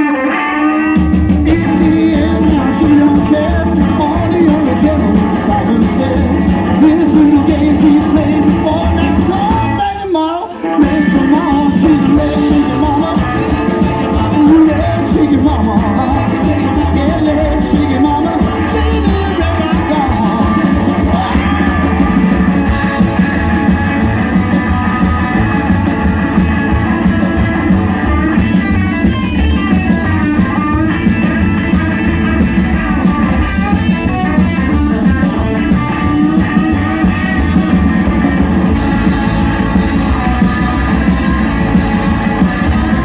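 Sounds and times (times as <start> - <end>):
person singing: 0.0 - 26.1
rock and roll band playing: 0.0 - 43.0.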